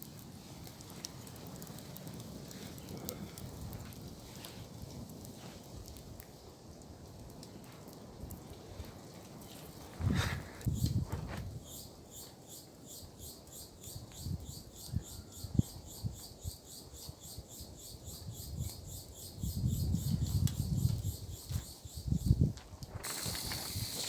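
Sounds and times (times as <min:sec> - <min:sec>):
insect chirping: 0:10.6 - 0:24.0.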